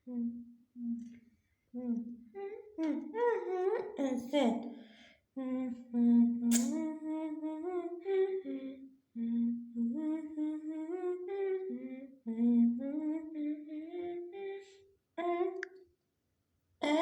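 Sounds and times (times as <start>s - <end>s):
high voice humming: 5.4s - 14.6s.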